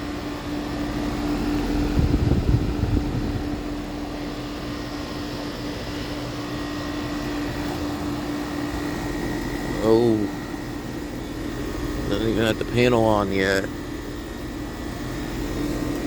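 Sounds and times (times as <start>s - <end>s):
heat pump fan hum: 0.0s - 16.0s
low rumbles: 1.8s - 3.8s.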